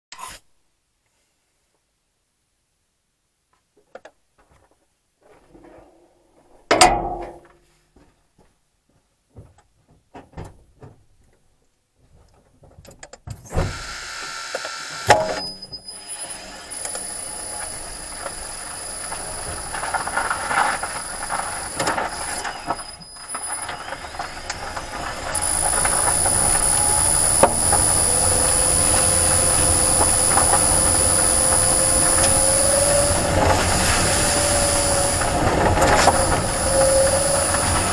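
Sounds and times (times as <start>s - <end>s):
thump: 6.7s - 7.5s
electric car drivetrain whine: 13.6s - 37.9s
road noise: 23.7s - 37.9s.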